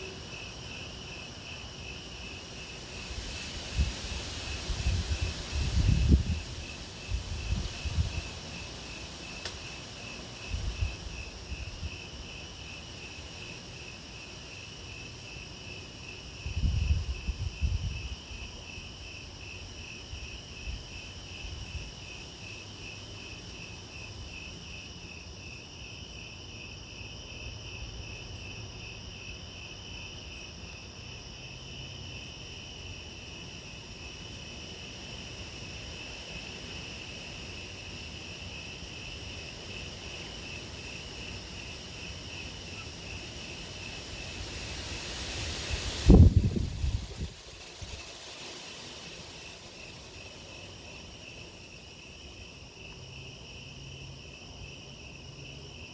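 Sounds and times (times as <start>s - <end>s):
crickets chirping: 0.0s - 55.9s
high insect tone: 0.0s - 55.9s.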